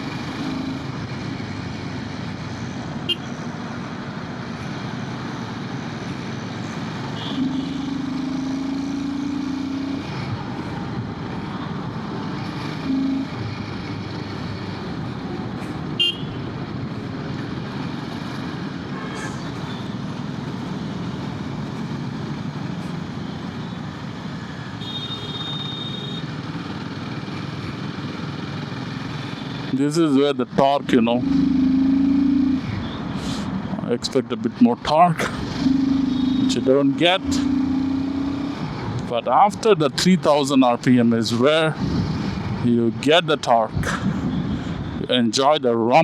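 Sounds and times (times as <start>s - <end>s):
road and wind noise: 0.0s - 46.0s
vehicle horn: 3.1s - 3.4s, 7.2s - 7.9s, 16.0s - 16.5s, 24.8s - 26.2s.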